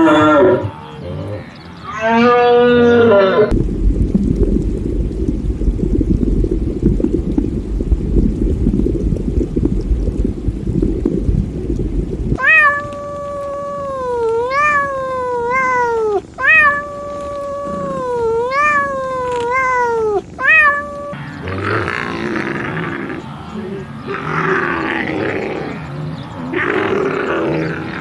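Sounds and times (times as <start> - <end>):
low rumbling noise: 0.0 - 14.1, 16.4 - 28.0
cat yowling: 1.9 - 3.6, 12.4 - 28.0.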